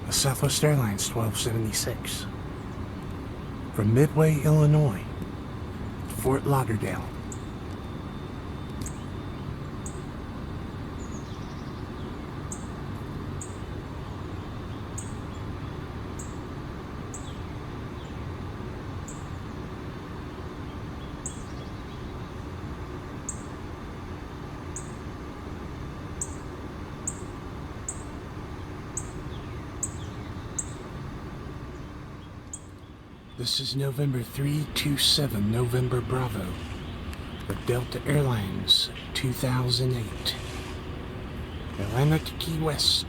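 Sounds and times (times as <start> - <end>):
bird chirping: 0.0 - 10.1, 10.9 - 12.8, 29.0 - 30.9, 31.5 - 43.0
distant jet airliner rumble: 0.0 - 43.0.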